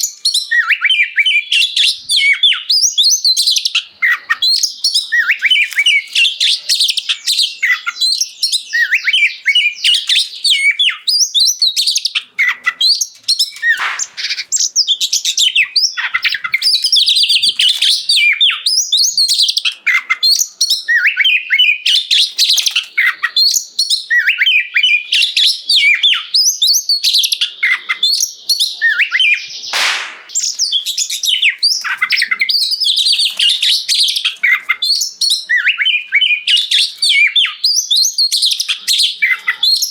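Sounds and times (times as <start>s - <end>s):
bird singing with whistles and trills: 0.0s - 39.9s
harsh bird note: 13.7s - 14.4s, 29.7s - 30.3s.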